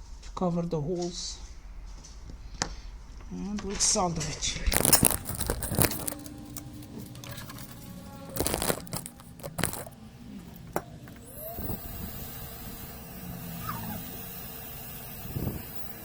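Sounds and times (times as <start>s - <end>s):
steady high hiss: 3.3s - 16.0s
handling knocks and clicks: 4.7s - 11.3s.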